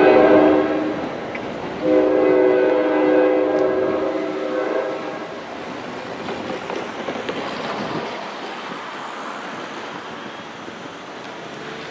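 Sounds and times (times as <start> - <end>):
train horn: 0.0 - 1.1, 1.8 - 5.4
train cars rolling on rails: 0.0 - 11.9.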